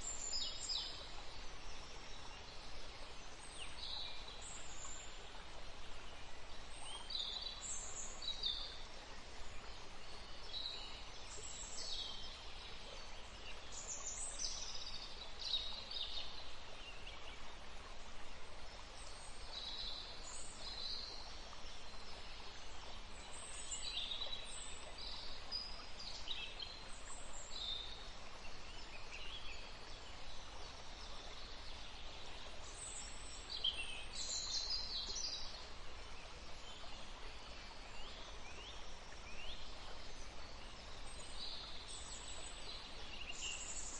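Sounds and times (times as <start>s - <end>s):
faint background hiss: 0.0s - 43.9s.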